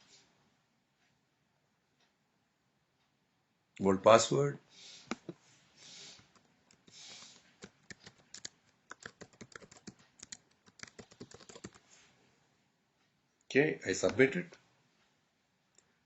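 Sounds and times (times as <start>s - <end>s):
soft hisses: 4.7s - 7.6s, 11.8s - 12.3s
keyboard typing: 6.3s - 11.8s.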